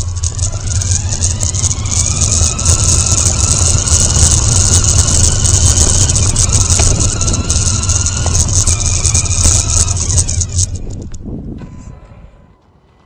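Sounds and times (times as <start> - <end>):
toy car electric motor whining: 0.0 - 12.3
low hum and hiss: 0.0 - 13.0.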